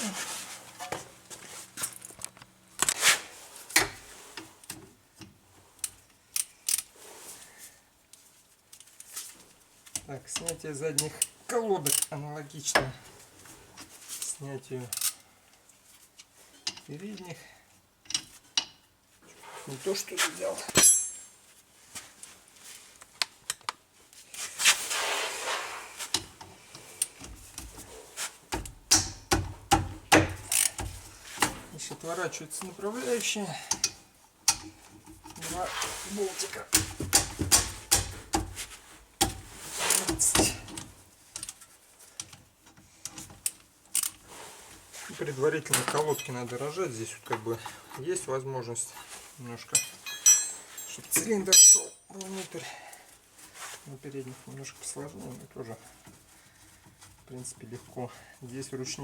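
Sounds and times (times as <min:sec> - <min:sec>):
rustling scrape: 0:00.0 - 0:02.0, 0:02.8 - 0:04.4, 0:24.2 - 0:26.2, 0:27.7 - 0:28.4, 0:35.4 - 0:36.7, 0:38.6 - 0:40.2, 0:44.2 - 0:47.9, 0:48.7 - 0:49.6, 0:52.3 - 0:58.1
rustling hiss: 0:24.2 - 0:27.2
metal tools clicking and knocking: 0:33.7 - 0:35.4, 0:49.7 - 0:52.0.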